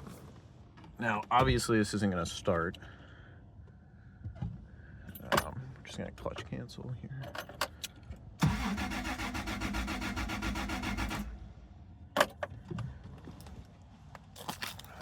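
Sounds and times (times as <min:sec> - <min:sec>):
engine cranking on starter: 0:08.4 - 0:11.6.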